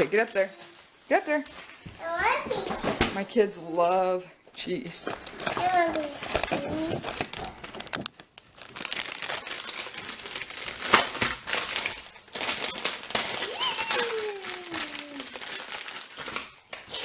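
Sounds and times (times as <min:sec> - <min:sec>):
plastic wrapper crinkling: 0:00.0 - 0:04.0, 0:04.6 - 0:17.0
young child's voice: 0:01.9 - 0:03.9, 0:05.4 - 0:07.6, 0:13.4 - 0:15.4.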